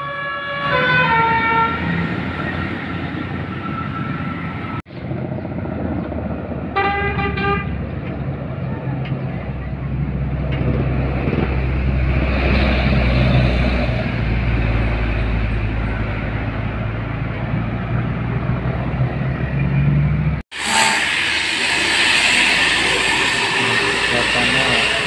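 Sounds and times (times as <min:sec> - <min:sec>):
road and traffic noise: 0:00.0 - 0:25.0
bus engine humming: 0:00.7 - 0:25.0
hissy vehicle noise: 0:20.5 - 0:25.0.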